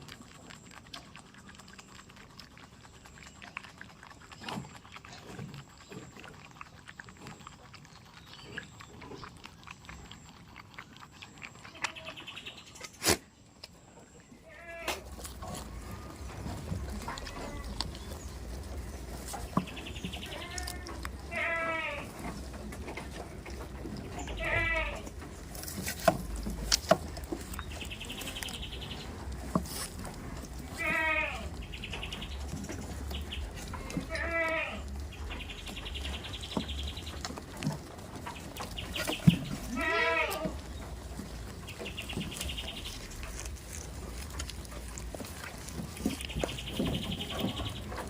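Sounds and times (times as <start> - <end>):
goats bleating: 14.4 - 18.1, 19.8 - 22.4, 24.0 - 25.2, 30.5 - 32.2, 33.2 - 35.1, 39.1 - 40.8.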